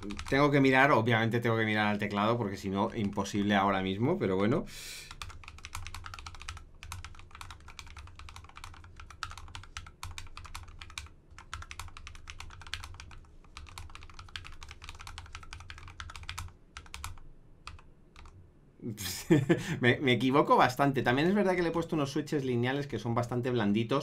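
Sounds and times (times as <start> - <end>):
typing on mechanical keyboard: 0.0 - 0.6, 5.1 - 18.4.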